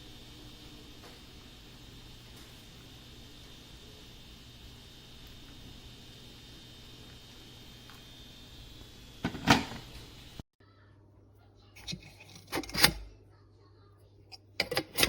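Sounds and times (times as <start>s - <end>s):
steady hiss: 0.0s - 10.4s
objects clunking and knocking: 9.2s - 10.2s.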